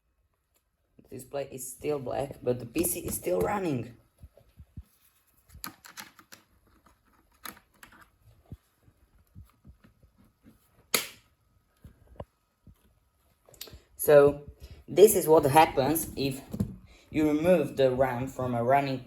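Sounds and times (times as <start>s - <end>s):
hands clicking and tapping computer parts: 5.5s - 8.1s.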